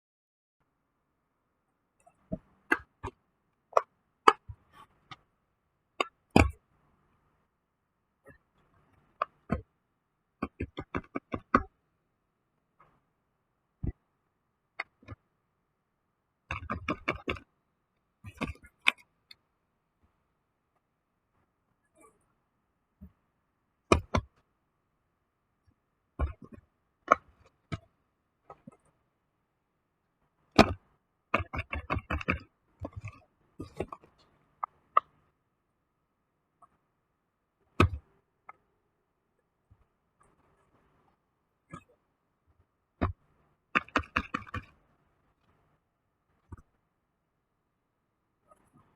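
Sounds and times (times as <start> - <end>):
sharp clicks and knocks: 43.0 - 44.8.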